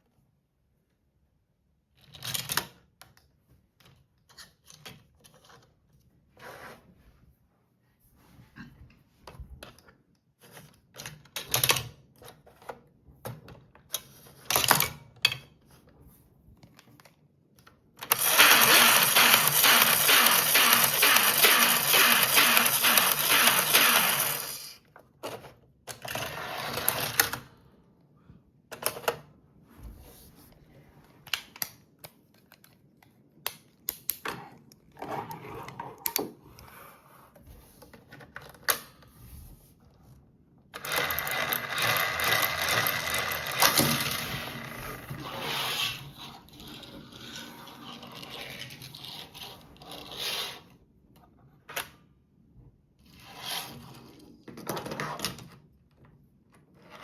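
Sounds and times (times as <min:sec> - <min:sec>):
plastic toy pieces clicking: 0:18.0 - 0:24.8.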